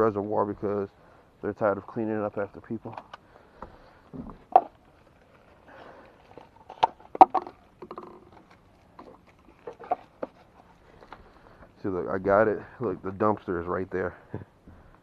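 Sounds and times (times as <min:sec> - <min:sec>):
rustling: 0:02.8 - 0:11.8
plastic container clicks and knocks: 0:06.8 - 0:08.3.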